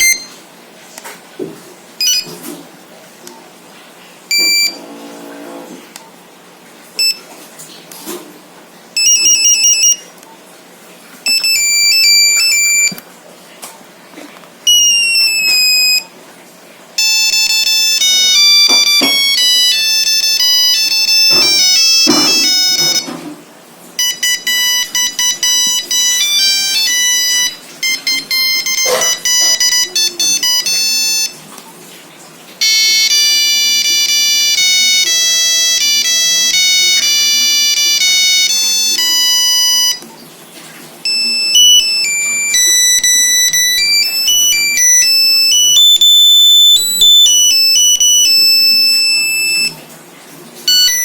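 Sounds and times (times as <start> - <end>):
monophonic phone ringtones: 0.0 - 0.4, 2.0 - 2.4, 4.3 - 5.1, 7.0 - 7.2, 9.0 - 10.1, 11.2 - 13.0, 14.6 - 16.1, 17.0 - 23.3, 24.0 - 31.4, 32.6 - 40.0, 41.0 - 49.8, 50.7 - 51.0.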